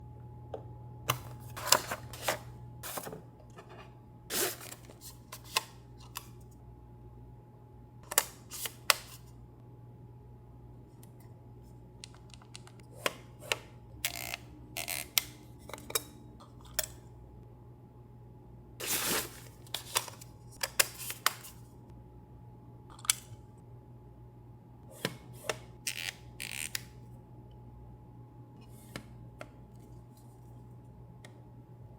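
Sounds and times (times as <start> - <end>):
low electrical hum: 0.0 - 31.9
packaging rustling: 4.3 - 5.6, 18.8 - 20.2.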